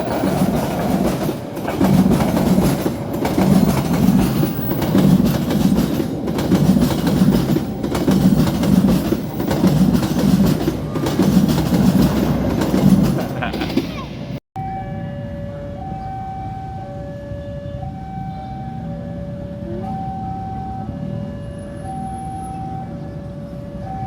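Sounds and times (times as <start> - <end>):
train wheels clattering: 0.0 - 14.4.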